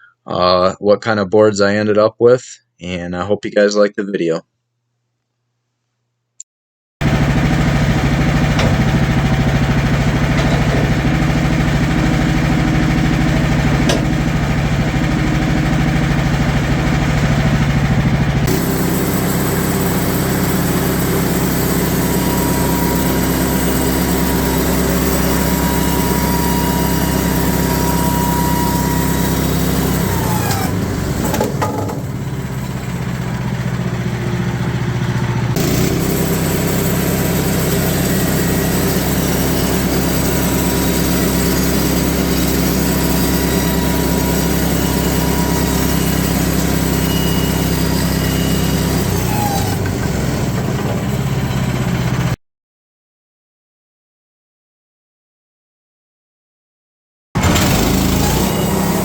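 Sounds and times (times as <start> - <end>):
sawmill engine running: 7.0 - 52.4, 57.4 - 59.0
bandsaw sawing wood: 7.8 - 32.6, 35.5 - 50.7, 57.4 - 59.0.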